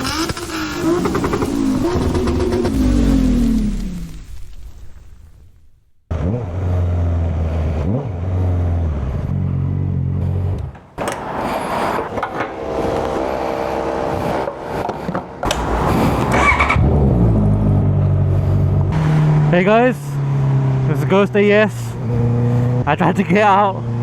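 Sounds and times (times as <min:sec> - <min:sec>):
motorcycle engine running: 0:00.0 - 0:04.2, 0:12.2 - 0:19.6.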